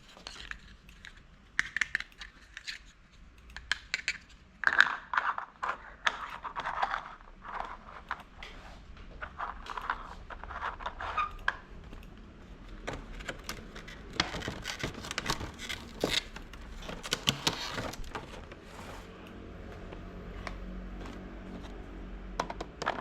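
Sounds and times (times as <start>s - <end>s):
plastic toy pieces clicking: 0.2s - 7.1s.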